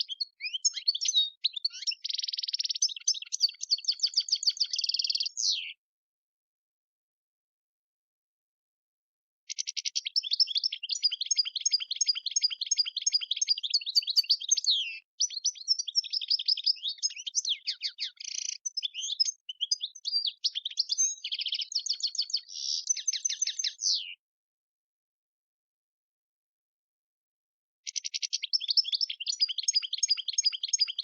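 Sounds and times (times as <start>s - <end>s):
bird twittering song: 0.0s - 5.8s, 9.5s - 24.2s, 27.9s - 31.0s.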